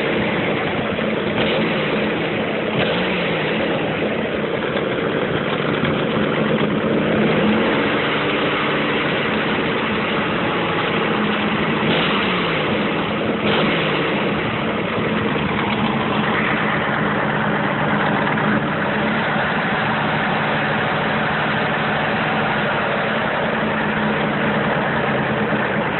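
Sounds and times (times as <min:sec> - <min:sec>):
car engine idling: 0:00.0 - 0:25.9
engine ticking and knocking: 0:00.0 - 0:25.9.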